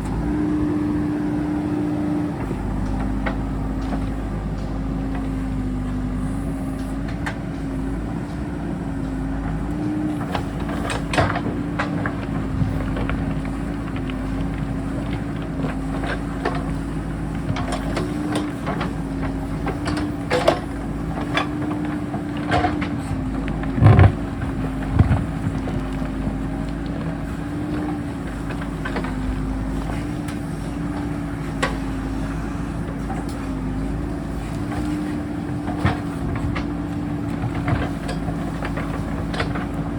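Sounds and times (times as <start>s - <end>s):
diesel engine running under load: 0.0s - 39.9s
digging knocks and clanks on rock: 8.4s - 39.9s.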